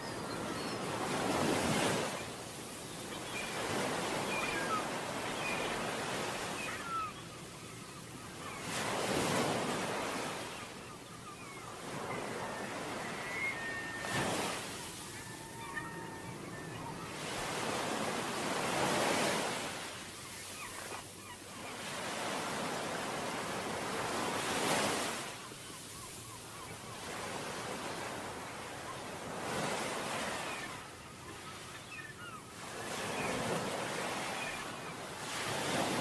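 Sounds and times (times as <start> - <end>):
sea waves breaking on beach: 8.4 - 20.9, 21.6 - 30.8, 32.7 - 36.0.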